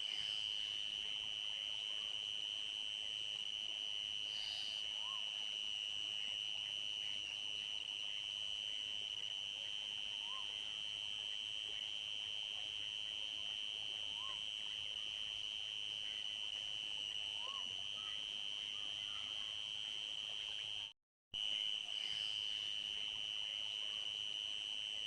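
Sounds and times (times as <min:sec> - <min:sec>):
crickets trilling: 0:00.0 - 0:25.0.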